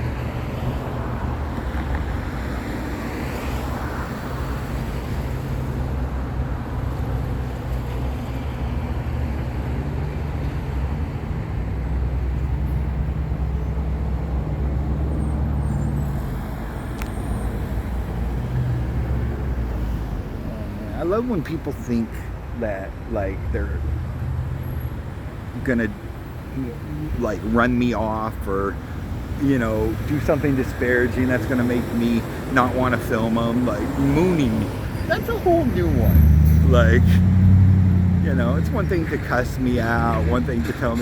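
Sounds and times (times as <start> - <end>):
road traffic passing: 0.0 - 41.0
low vehicle engine drone: 18.0 - 41.0.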